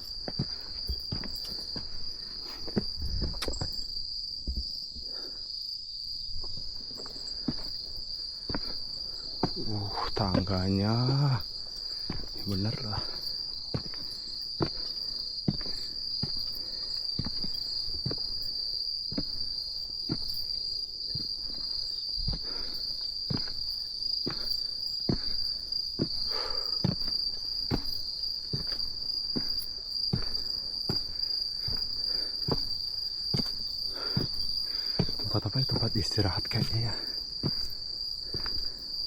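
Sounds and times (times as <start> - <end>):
footsteps: 0.0 - 5.2, 6.3 - 18.5, 26.0 - 38.8
night insects chirring: 0.0 - 39.0.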